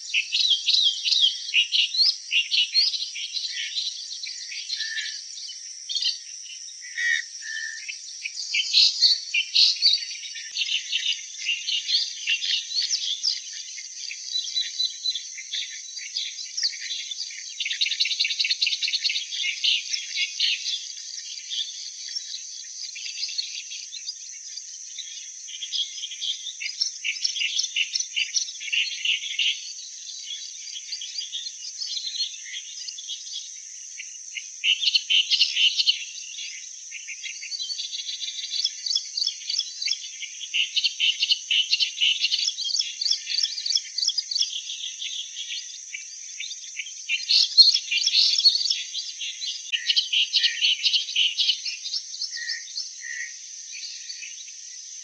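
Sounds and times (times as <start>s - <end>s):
warbler singing chattering notes: 37.2s - 45.6s, 46.3s - 54.6s.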